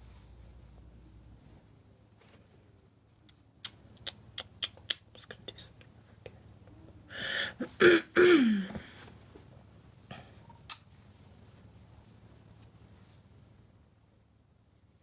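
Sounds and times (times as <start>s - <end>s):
person making throaty sounds: 7.2s - 8.8s.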